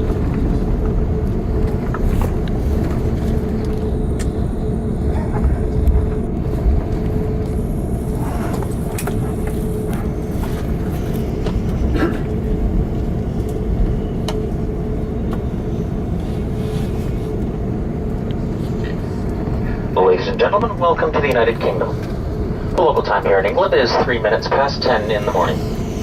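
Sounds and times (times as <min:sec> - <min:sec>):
aircraft cabin rumble: 0:00.0 - 0:26.0
cabin hum: 0:00.0 - 0:26.0.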